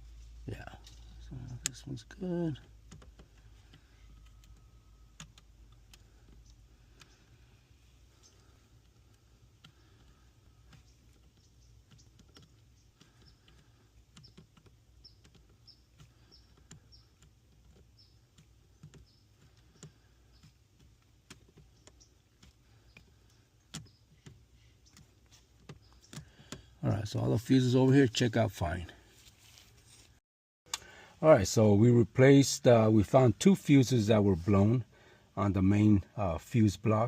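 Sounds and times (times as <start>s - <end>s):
small plastic clicks of fuses: 2.6s - 7.4s, 8.1s - 26.8s, 30.7s - 30.9s.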